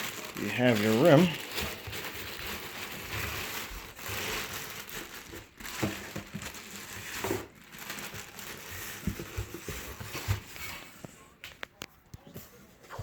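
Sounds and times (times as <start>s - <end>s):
packaging crinkling and rustling: 0.0s - 11.9s.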